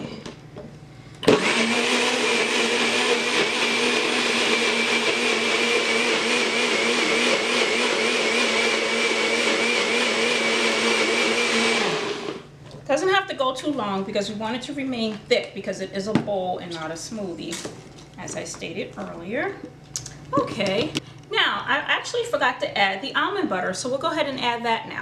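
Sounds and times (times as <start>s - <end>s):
blender motor whining: 1.2s - 12.5s.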